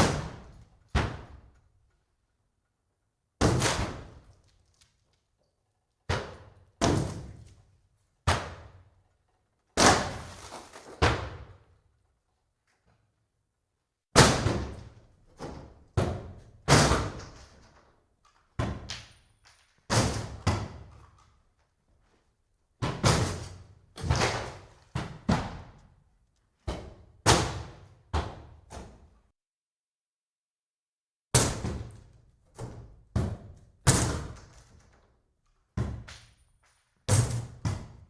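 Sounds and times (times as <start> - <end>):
axe striking wooden boards: 0.0 - 1.5, 3.4 - 4.4, 6.1 - 7.6, 8.2 - 8.9, 9.7 - 11.6, 14.1 - 17.6, 18.6 - 19.2, 19.9 - 21.0, 22.8 - 25.9, 26.6 - 29.1, 31.3 - 34.8, 35.8 - 36.4, 37.1 - 38.0.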